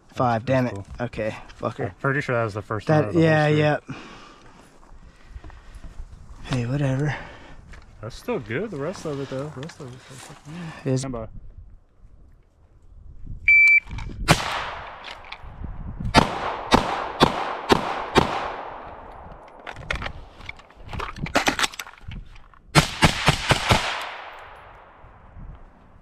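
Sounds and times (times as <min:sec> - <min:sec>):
shot timer beep: 0:13.5 - 0:13.9
rapid gunshots with echo: 0:16.2 - 0:19.1, 0:22.8 - 0:25.0.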